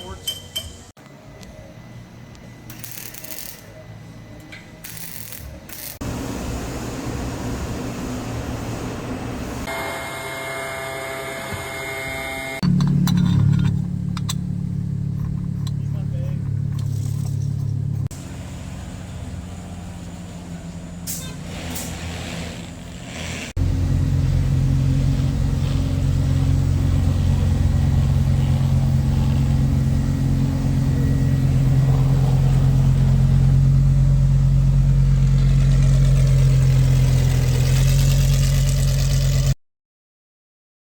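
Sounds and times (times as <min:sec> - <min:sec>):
car engine idling: 0:12.6 - 0:21.0, 0:23.6 - 0:39.5.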